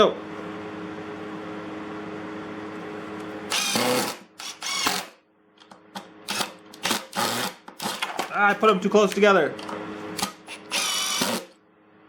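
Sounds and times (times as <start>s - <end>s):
impact driver driving screws: 3.5s - 5.2s, 6.3s - 8.3s, 10.2s - 11.6s.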